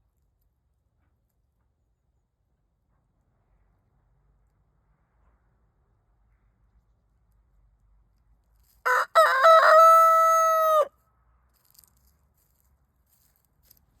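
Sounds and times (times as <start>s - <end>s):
rooster crowing: 8.8s - 10.9s.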